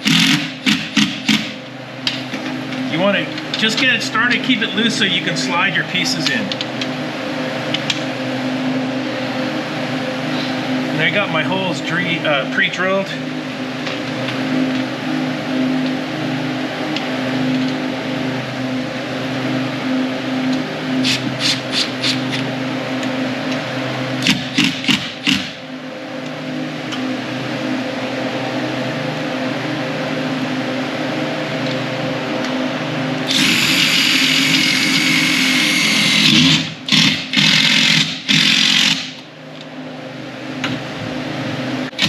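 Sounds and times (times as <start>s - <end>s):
power drill driving screws: 33.3s - 39.2s.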